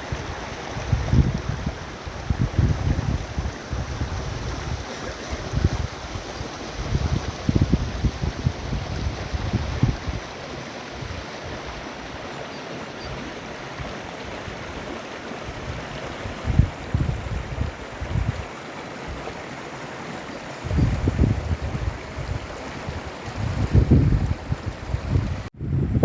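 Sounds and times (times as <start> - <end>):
wind buffeting microphone: 0.0 - 12.3, 15.5 - 18.5, 20.6 - 26.0
running water rushing: 0.0 - 25.6.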